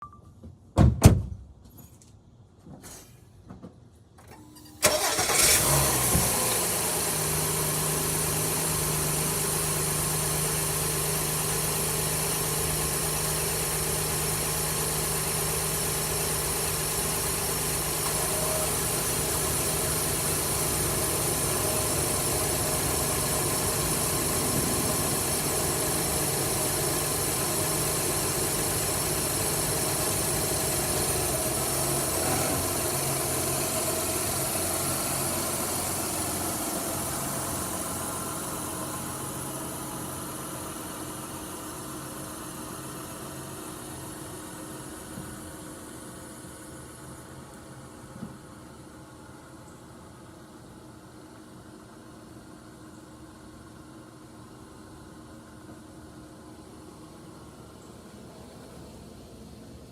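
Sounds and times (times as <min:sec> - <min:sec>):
loud thump: 0:00.8 - 0:01.5
car engine starting and idling: 0:04.2 - 0:59.9.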